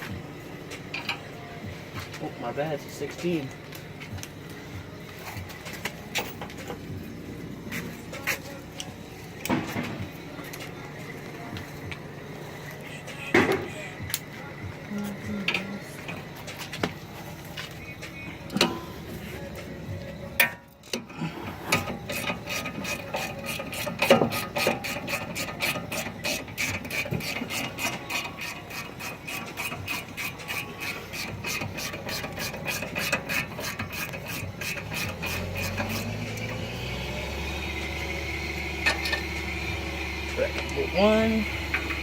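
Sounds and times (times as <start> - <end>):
hand ratchet clicking: 21.7 - 36.5.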